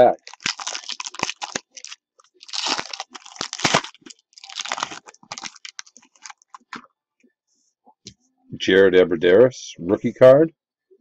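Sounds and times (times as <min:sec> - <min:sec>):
foil wrapper tearing and crinkling: 0:00.0 - 0:06.8.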